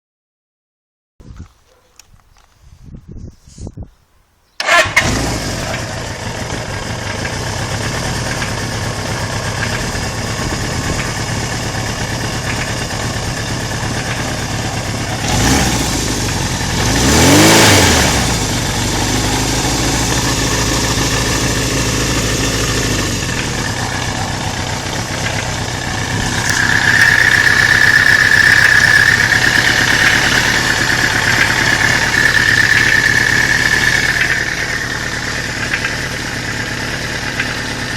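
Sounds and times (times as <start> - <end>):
engine revving: 4.6 - 37.9
motorcycle engine starting and idling: 4.6 - 37.9
engine knock: 4.7 - 37.9
high-pitched whine: 23.7 - 36.2.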